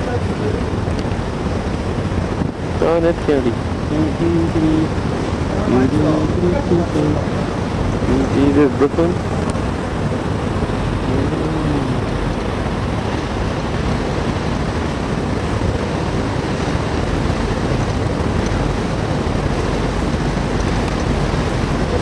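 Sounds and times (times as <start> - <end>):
ferry engines: 0.0 - 13.1
water: 0.0 - 22.0
wind: 0.0 - 22.0.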